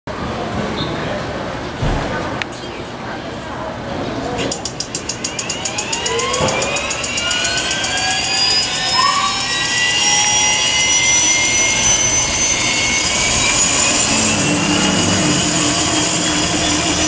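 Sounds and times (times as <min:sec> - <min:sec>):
rising turbine whine: 0:04.7 - 0:17.0
low hum: 0:05.1 - 0:17.0.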